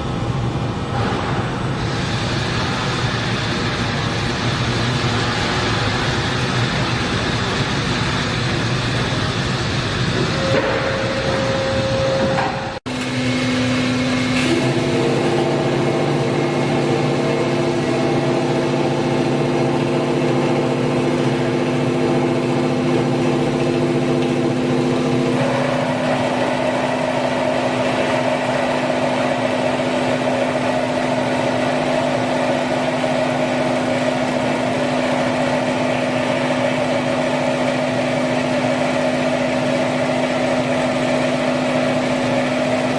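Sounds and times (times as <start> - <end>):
drilling machine drone: 0.0 - 42.9
held whining tones: 10.1 - 29.2.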